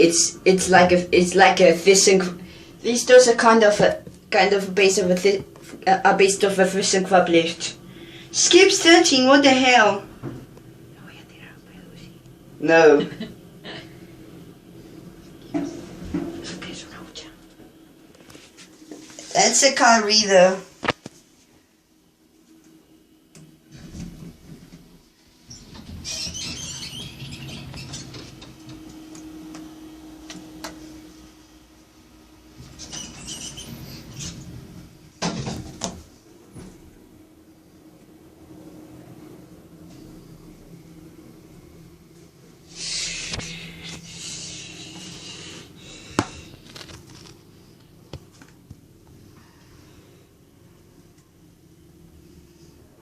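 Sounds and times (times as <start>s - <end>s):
lift humming: 0.0s - 20.7s, 21.3s - 53.0s
hiss: 42.7s - 45.7s.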